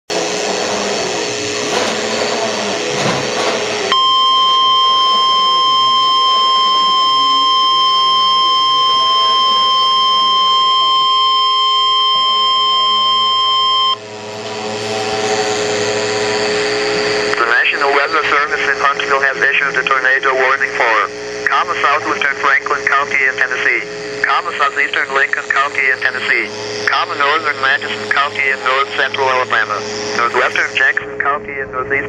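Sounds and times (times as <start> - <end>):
rough noisy sound: 0.1 - 4.0, 14.0 - 19.2
steady alarm tone: 0.1 - 30.9.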